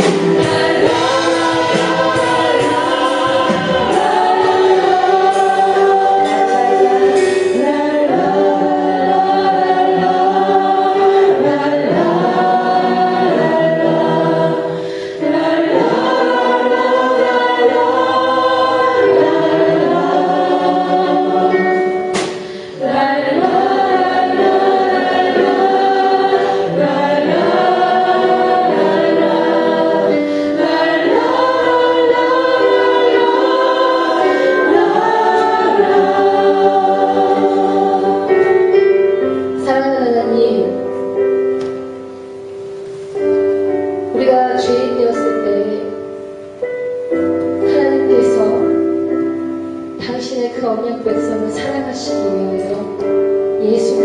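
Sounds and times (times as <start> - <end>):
group singing slow praise song: 0.0 - 39.7
instrumental accompaniment: 0.0 - 54.0
single sharp hit: 22.1 - 22.5.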